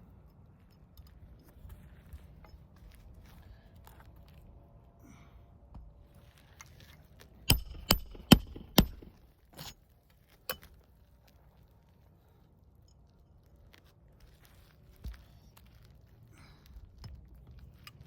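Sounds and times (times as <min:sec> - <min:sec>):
hammer blows with metallic ring: 0:07.5 - 0:09.7.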